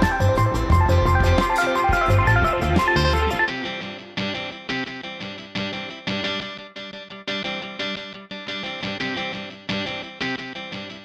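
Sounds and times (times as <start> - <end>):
melodic music with strong bass: 0.0 - 3.8
picked guitar chords: 0.0 - 11.0.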